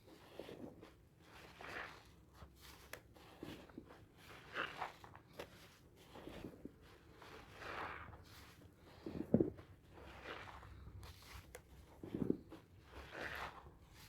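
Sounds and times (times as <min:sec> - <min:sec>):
soap lather squishing and crackling: 0:04.3 - 0:13.6.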